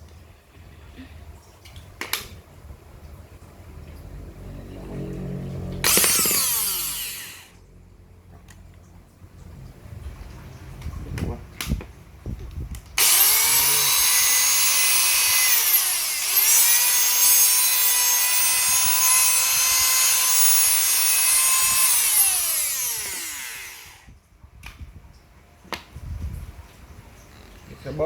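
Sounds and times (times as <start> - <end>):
electric motor whining: 5.0 - 7.6, 13.0 - 24.1.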